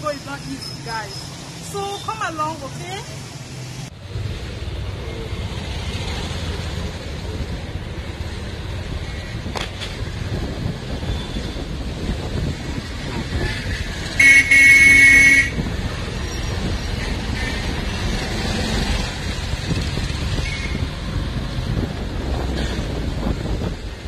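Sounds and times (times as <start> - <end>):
street traffic noise: 0.0 - 24.0
vehicle horn honking: 14.2 - 15.6.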